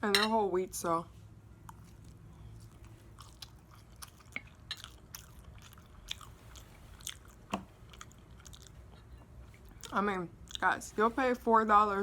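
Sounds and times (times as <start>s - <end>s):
close chewing with wet mouth clicks: 1.6s - 10.7s.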